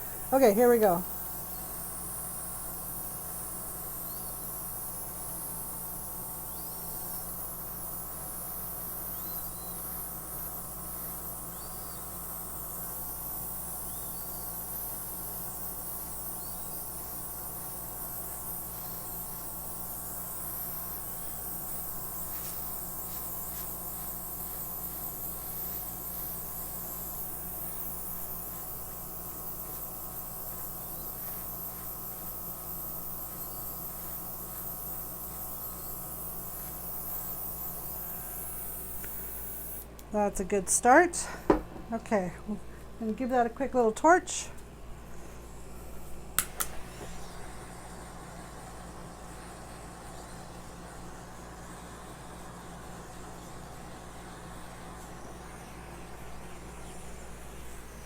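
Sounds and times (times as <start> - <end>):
air hissing: 0.0 - 39.9
airbrush compressor humming: 0.0 - 58.0.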